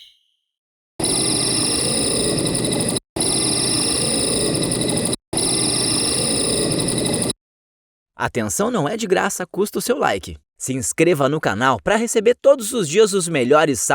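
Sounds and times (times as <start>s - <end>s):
cricket trilling: 1.0s - 7.3s.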